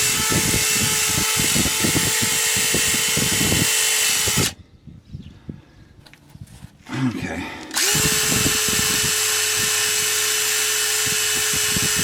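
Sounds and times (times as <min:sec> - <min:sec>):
power tool motor whine: 0:00.0 - 0:04.6, 0:07.7 - 0:12.0.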